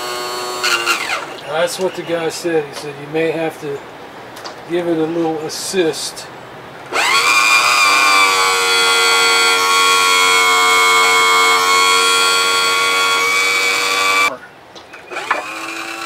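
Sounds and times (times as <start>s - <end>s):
electric pump motor whining: 0.0s - 2.4s, 6.9s - 14.3s, 15.0s - 16.0s.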